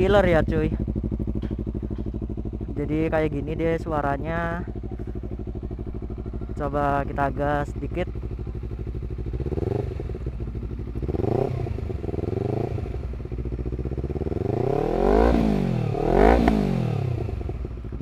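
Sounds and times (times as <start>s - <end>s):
motorcycle engine idling and revving: 0.0s - 18.0s.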